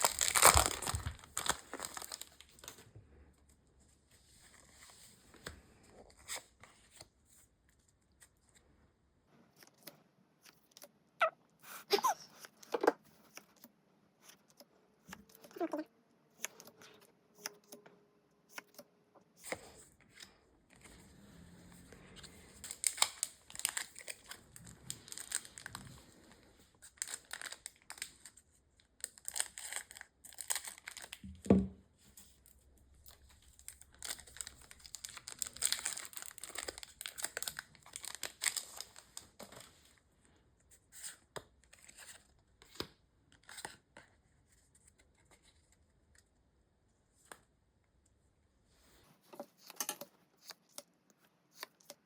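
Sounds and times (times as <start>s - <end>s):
foil wrapper crinkling and tearing: 0.0s - 2.8s, 22.6s - 31.2s, 33.1s - 39.7s.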